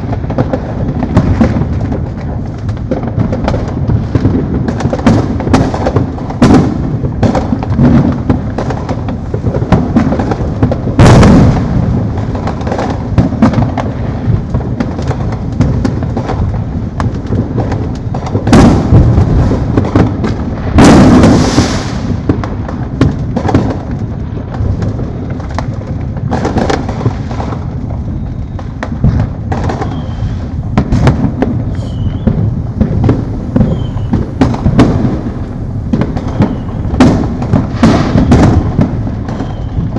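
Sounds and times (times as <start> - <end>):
firework booms: 0.0 - 39.9
fireworks crackling and popping: 0.0 - 39.9.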